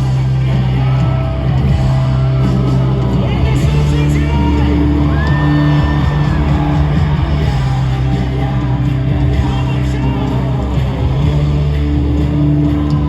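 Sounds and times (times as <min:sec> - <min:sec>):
live rock band playing: 0:00.0 - 0:13.0
voices shouting and whooping: 0:00.5 - 0:09.1.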